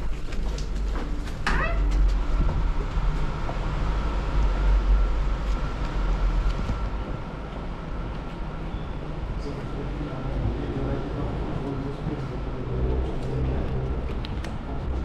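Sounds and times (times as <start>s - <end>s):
vehicle noise low rumble: 0.0s - 15.0s
faint high whine: 3.8s - 12.9s.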